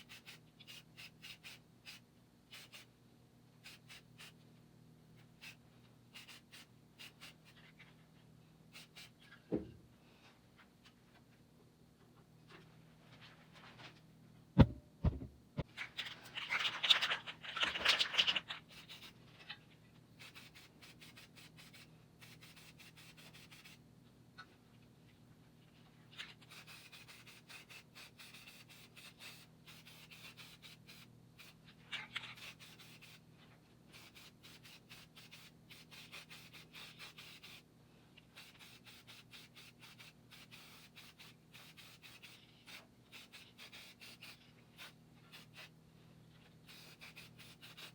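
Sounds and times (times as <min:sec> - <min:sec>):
faint steady hum: 0:00.0 - 0:47.8
sharp knocks: 0:14.6 - 0:15.4.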